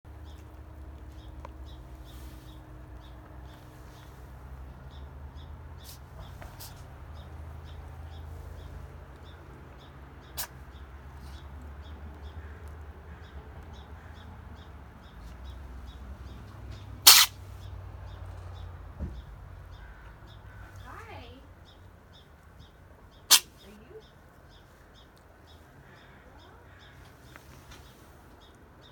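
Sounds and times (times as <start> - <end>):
cat sneezing: 17.0 - 17.4, 23.3 - 23.6.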